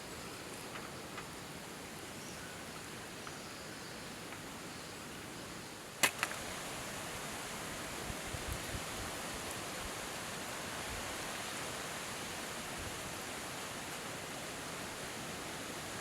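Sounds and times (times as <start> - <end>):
outdoor background hiss: 0.0 - 16.0.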